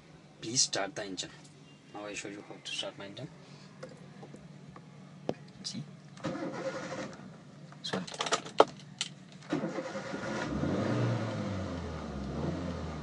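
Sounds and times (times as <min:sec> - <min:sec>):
car engine starting and idling: 0:06.2 - 0:07.4, 0:09.4 - 0:13.0.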